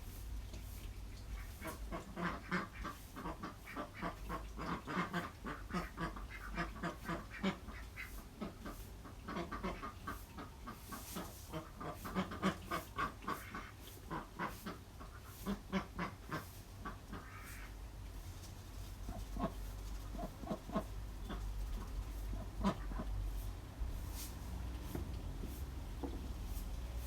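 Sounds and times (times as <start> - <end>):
ducks quacking: 1.3 - 17.8, 19.1 - 23.4.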